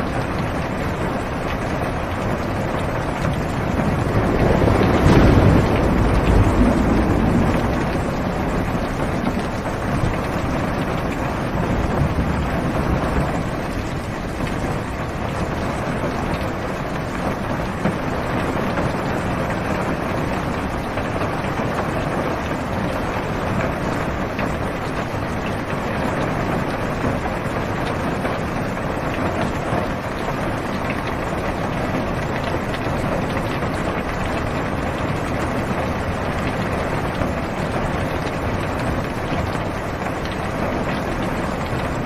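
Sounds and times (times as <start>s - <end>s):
heavy rain on car roof: 0.0s - 42.0s
low rumble: 3.4s - 12.9s.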